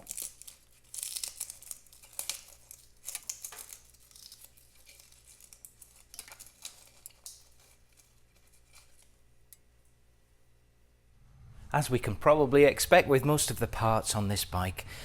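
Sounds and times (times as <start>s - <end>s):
rustling: 0.0s - 9.3s
steady low hum: 9.2s - 15.0s.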